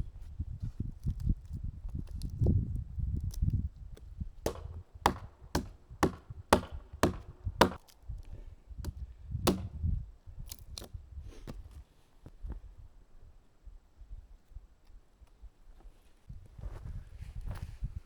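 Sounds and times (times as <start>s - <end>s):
wood chopping blows: 4.4s - 8.0s, 8.8s - 9.9s.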